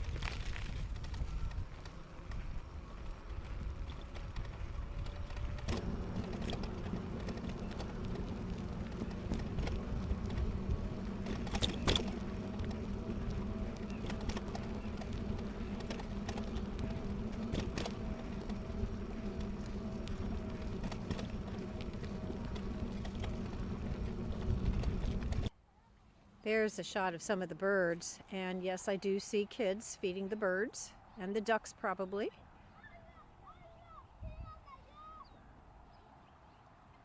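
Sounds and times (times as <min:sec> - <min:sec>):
bike clicks and rattles: 0:00.0 - 0:25.5
electric bike motor hum: 0:00.0 - 0:25.5
tyre and road rumble: 0:00.0 - 0:25.5.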